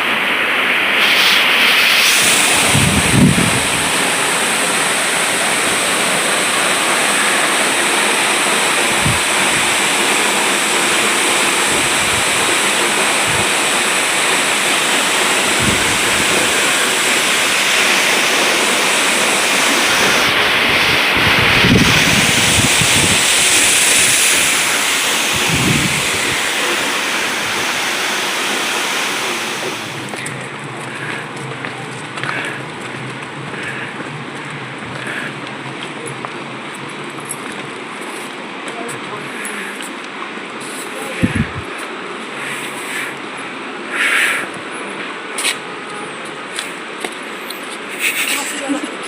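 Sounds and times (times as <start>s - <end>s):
waterfall rushing: 0.0s - 45.5s
wind bumps on microphone: 1.0s - 5.8s, 8.8s - 9.9s, 15.5s - 17.3s, 19.5s - 27.8s, 41.2s - 41.7s.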